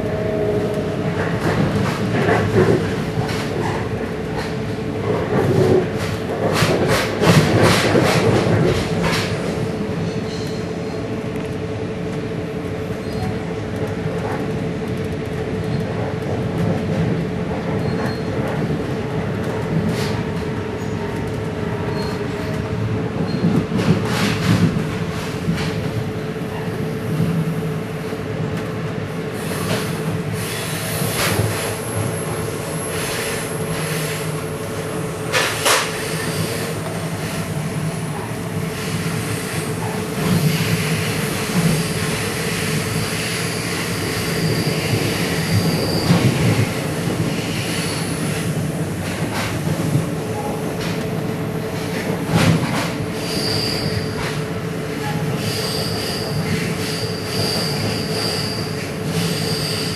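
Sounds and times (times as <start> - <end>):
train running on rails: 0.0 - 59.9
metallic wheel squeal: 53.2 - 54.2, 55.6 - 59.9.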